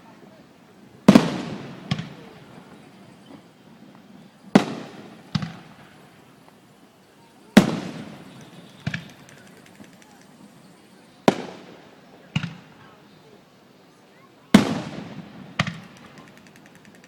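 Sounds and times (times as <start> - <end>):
fireworks booming: 1.0 - 6.7, 7.4 - 10.2, 11.2 - 12.9, 14.5 - 17.0.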